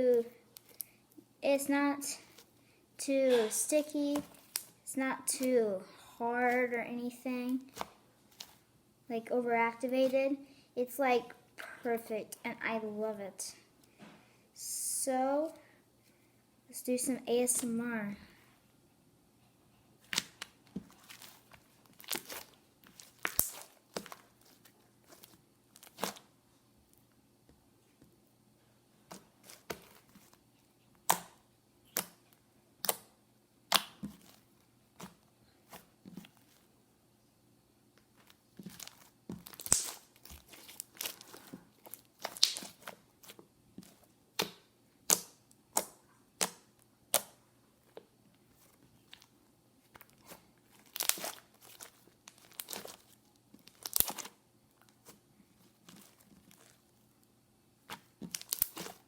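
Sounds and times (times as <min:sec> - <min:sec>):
slime squished by hand: 0:20.0 - 0:26.3, 0:33.7 - 0:36.6, 0:38.5 - 0:47.4, 0:48.6 - 0:56.8, 0:57.8 - 0:59.0
wet pops and crackles: 0:22.0 - 0:24.2, 0:31.0 - 0:32.2, 0:33.7 - 0:34.4, 0:38.6 - 0:47.4, 0:49.9 - 0:54.3, 0:57.9 - 0:59.0.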